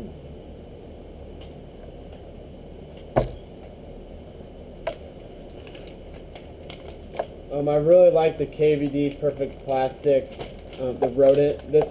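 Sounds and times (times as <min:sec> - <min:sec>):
steady low hum: 0:00.0 - 0:11.9
items knocking on a table: 0:03.2 - 0:03.5.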